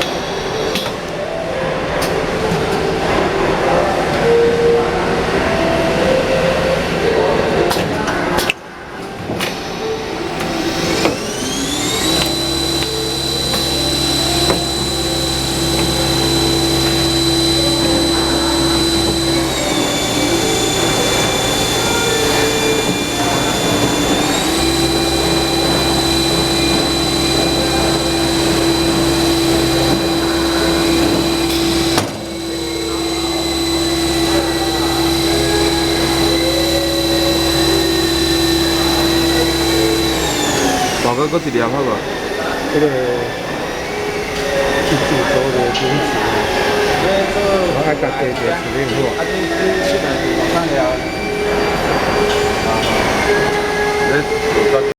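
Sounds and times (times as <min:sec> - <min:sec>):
lathe high whine: 0:00.0 - 0:07.7, 0:09.6 - 0:54.9
low hum: 0:11.2 - 0:41.5.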